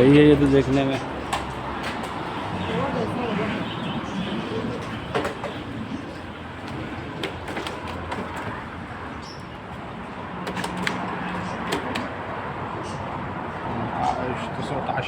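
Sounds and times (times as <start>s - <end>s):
crowd hubbub: 0.0s - 9.1s
sharp clicks and knocks: 0.9s - 2.2s, 6.6s - 8.7s, 10.4s - 12.2s.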